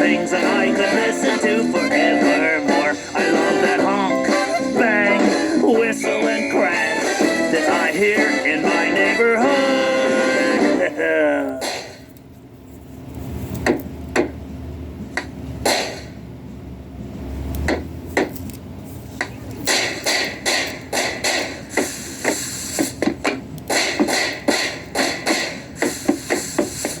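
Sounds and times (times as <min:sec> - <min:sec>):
percussive bangs and knocks: 0:19.7 - 0:27.0.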